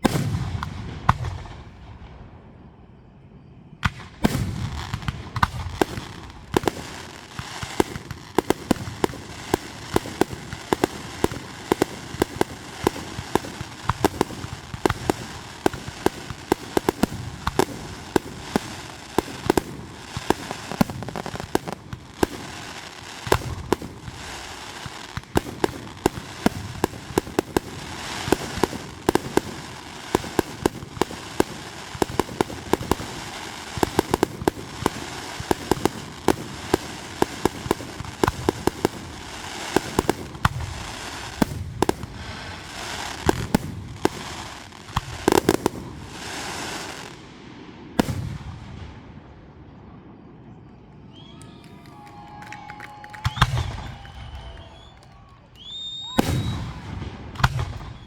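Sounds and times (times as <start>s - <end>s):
fireworks popping and crackling: 0.0s - 2.0s, 3.8s - 49.1s, 51.2s - 58.0s
fireworks booming: 0.0s - 49.5s, 53.1s - 58.0s.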